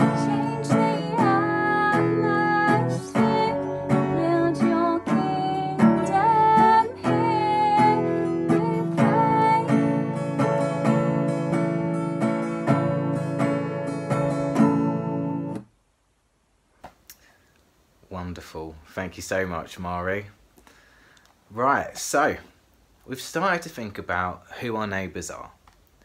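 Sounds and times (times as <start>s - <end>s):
person singing: 0.0s - 10.0s
strummed acoustic guitar: 0.0s - 15.6s.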